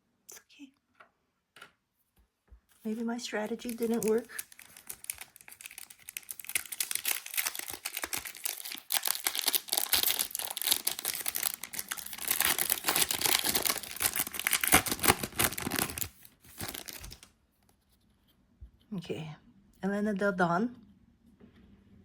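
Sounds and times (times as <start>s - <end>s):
wrapper crinkling and tearing: 3.4s - 17.3s.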